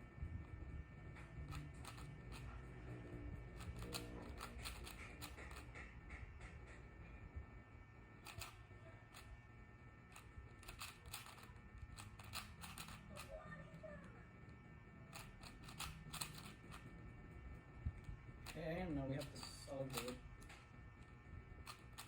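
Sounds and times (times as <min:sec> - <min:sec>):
puzzle cube clicking: 0:01.4 - 0:02.5, 0:03.5 - 0:05.7, 0:10.2 - 0:13.3, 0:15.2 - 0:16.9.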